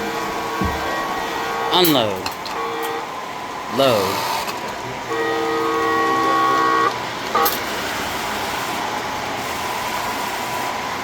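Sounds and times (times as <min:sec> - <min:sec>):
model train horn chord: 0:00.0 - 0:03.2, 0:05.0 - 0:07.6
steady background hum: 0:00.0 - 0:11.0.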